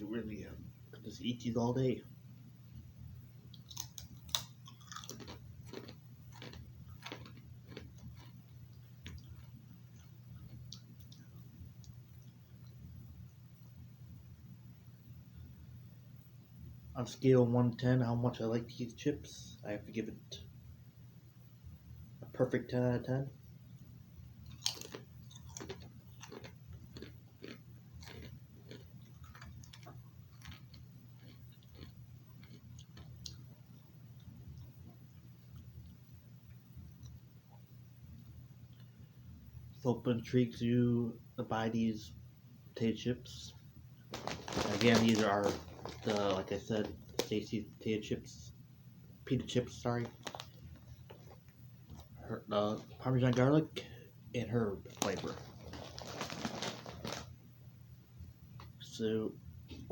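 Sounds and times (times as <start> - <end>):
low steady hum: 0.0 - 59.9
crunchy chewing of chips: 3.4 - 12.9, 24.4 - 39.0, 44.1 - 47.6, 49.4 - 57.4.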